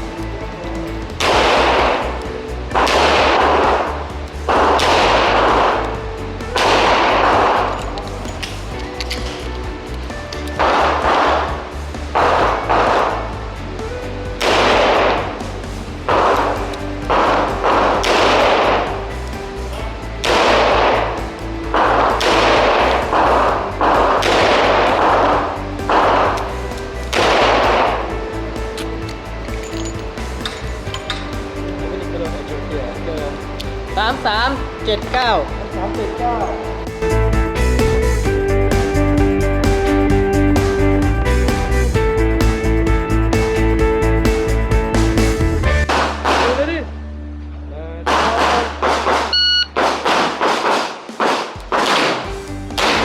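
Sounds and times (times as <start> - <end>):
background music: 0.0 - 53.0
revolver shots ringing: 1.1 - 13.2, 14.4 - 19.3, 20.1 - 32.5.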